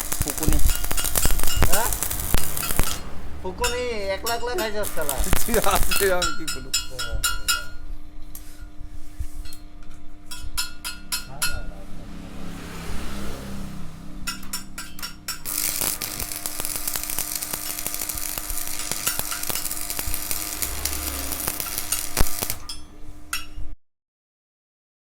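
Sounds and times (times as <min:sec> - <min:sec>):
arc welding crackling hiss: 0:00.0 - 0:06.5, 0:15.4 - 0:22.8.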